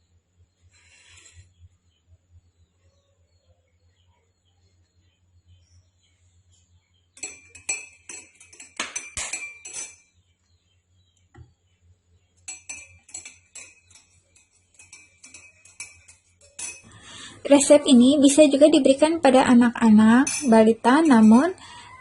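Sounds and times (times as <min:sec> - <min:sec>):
spoon clinking in a glass: 0:07.2 - 0:10.2, 0:12.4 - 0:17.0, 0:20.1 - 0:21.6.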